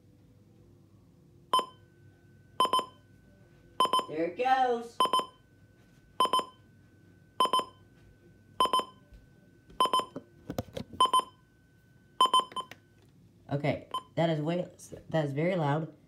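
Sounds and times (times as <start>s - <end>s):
alarm buzzer beeping: 2.6s - 3.0s, 4.9s - 5.4s, 6.2s - 6.7s, 7.4s - 7.8s.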